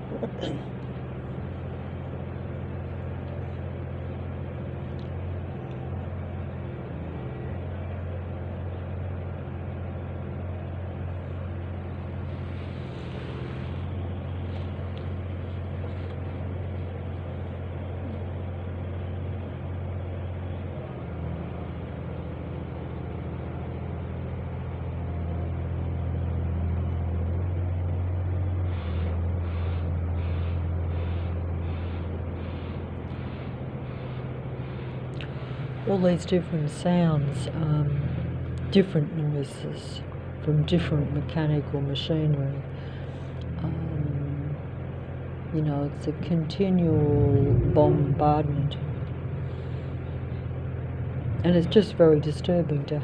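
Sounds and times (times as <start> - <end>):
low mechanical drone: 0.0 - 53.0
rhythmic pulses: 46.7 - 52.5.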